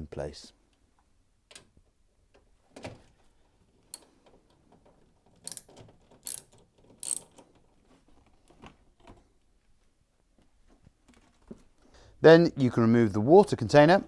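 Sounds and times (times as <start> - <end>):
ratchet wrench clicking: 5.4 - 7.4.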